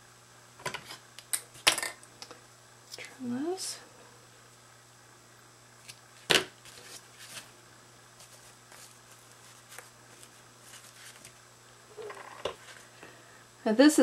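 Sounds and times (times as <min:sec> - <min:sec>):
paper rustling and ticking: 0:08.2 - 0:11.4.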